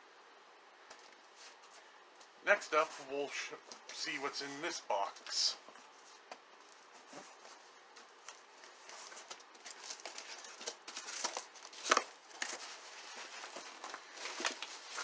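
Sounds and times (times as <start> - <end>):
packing material crinkling: 8.2 - 15.0.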